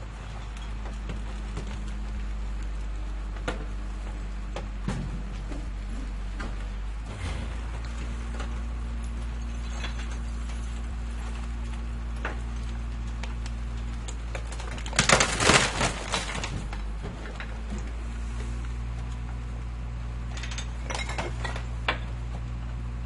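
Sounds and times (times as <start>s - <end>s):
garbage truck engine idling: 0.0s - 15.0s
metallic clanking and rattling: 4.8s - 13.2s, 20.2s - 22.2s.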